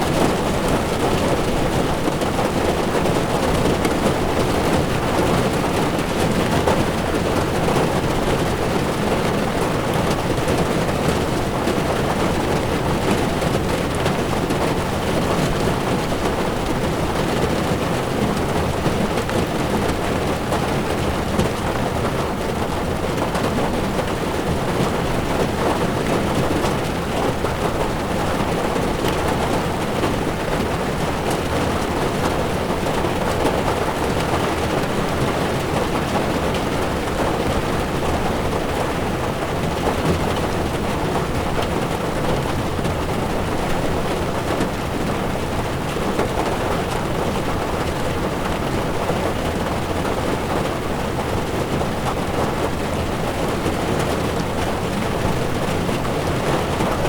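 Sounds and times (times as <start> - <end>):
heavy rain on car windshield: 0.0 - 57.0.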